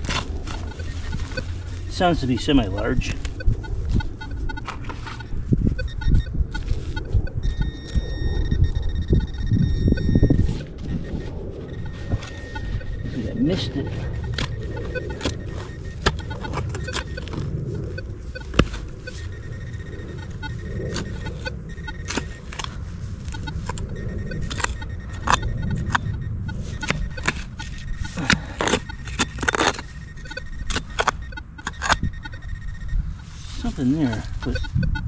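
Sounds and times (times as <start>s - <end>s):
digging tool scraping soil and stones: 0.0s - 3.3s, 20.9s - 26.0s
metal detector high tone: 0.4s - 35.0s.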